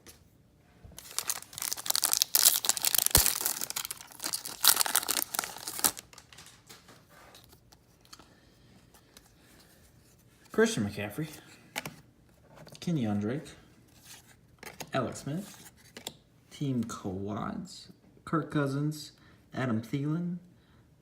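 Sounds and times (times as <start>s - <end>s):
faint rustling of cards: 0.9s - 16.2s
wrapper tearing and crinkling: 1.0s - 6.5s.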